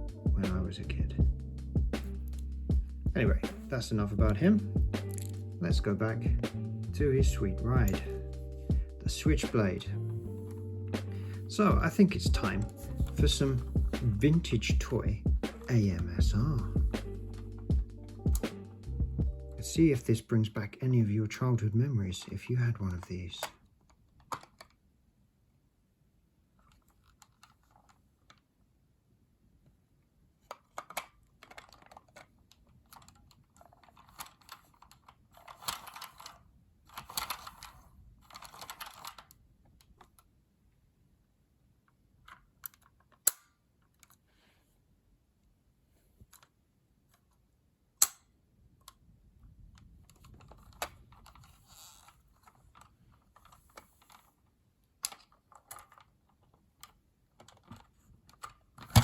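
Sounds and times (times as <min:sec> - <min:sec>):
plastic toy parts clicking and rattling: 0:05.0 - 0:05.4, 0:22.1 - 0:24.9, 0:26.6 - 0:28.5, 0:30.4 - 0:40.4, 0:41.8 - 0:44.3, 0:46.2 - 0:47.4, 0:48.0 - 0:59.0.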